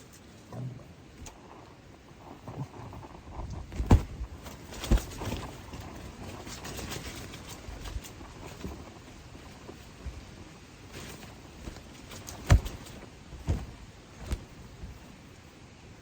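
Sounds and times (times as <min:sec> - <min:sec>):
loud dull thumps: 0:03.3 - 0:05.9, 0:11.0 - 0:15.1
small knocks and handling noises: 0:03.4 - 0:15.2.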